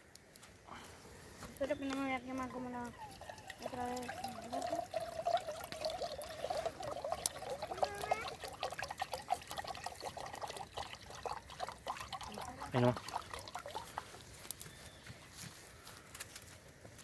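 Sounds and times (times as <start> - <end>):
water pouring into container: 2.3 - 14.3.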